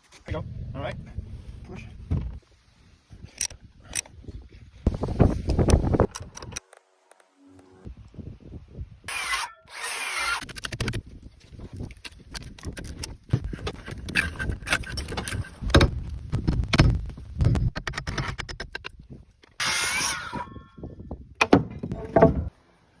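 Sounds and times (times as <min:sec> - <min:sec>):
timber knocking and thudding: 0:21.4 - 0:22.6.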